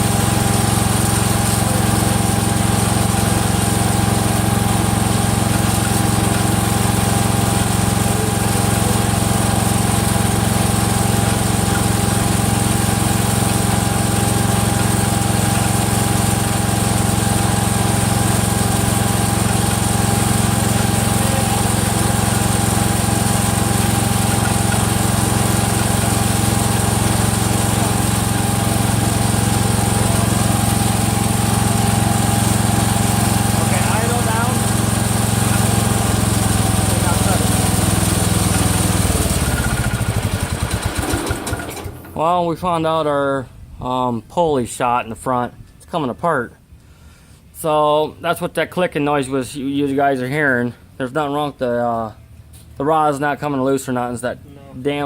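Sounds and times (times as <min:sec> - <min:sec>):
engine clicking: 0:00.0 - 0:42.2
tractor engine running: 0:00.0 - 0:42.2.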